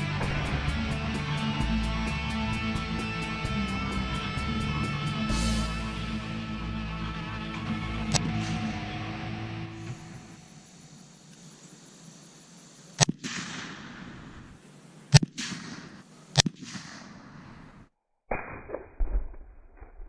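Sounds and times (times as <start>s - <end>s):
gunshots echoing: 0.0s - 4.3s, 13.0s - 19.3s.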